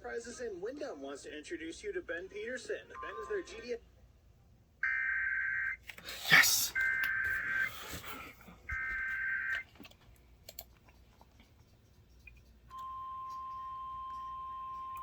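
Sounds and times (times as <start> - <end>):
steady warning alarm tone: 4.8 - 5.8, 6.7 - 7.8, 8.7 - 9.6, 12.7 - 15.0.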